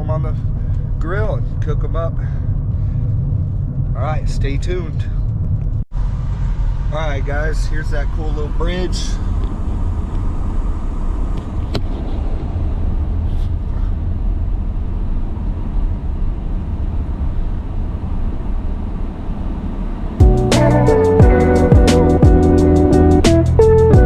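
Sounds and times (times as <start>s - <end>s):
car engine and road noise: 0.0s - 24.0s
strummed guitar music: 20.2s - 24.0s.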